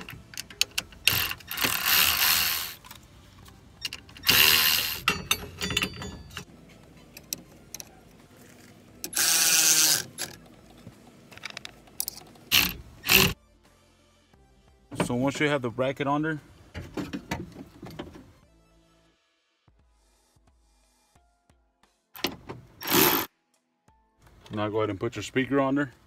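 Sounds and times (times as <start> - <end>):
ratchet wrench clicking: 0.0 - 2.9, 3.8 - 6.4, 9.0 - 10.4, 11.4 - 13.4, 22.8 - 23.3
screws being handled: 0.0 - 3.0, 3.9 - 6.4, 9.1 - 10.4.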